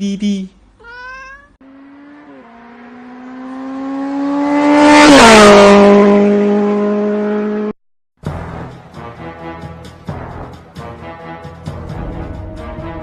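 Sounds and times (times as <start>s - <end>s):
car engine passing by: 1.6s - 7.7s.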